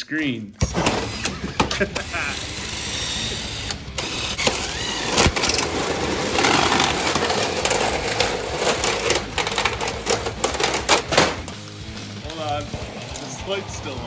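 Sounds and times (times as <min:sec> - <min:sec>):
printer casing cracking and crunching: 0:03.3 - 0:11.7.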